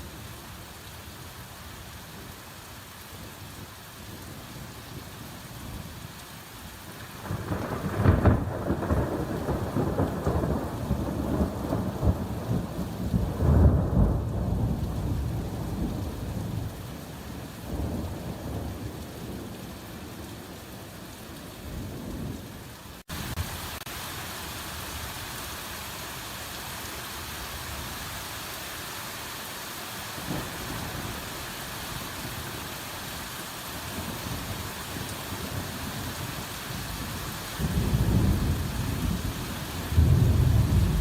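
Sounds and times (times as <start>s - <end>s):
hard rain falling: 0.0s - 41.0s
thunder rumbling: 7.2s - 16.7s, 37.6s - 41.0s.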